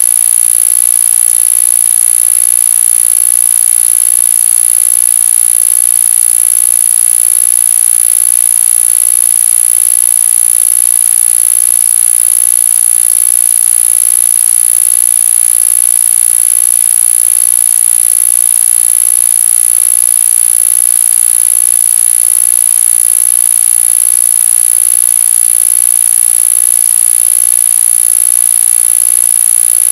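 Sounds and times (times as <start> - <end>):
high-pitched pulsing electronic tone: 0.0 - 1.8.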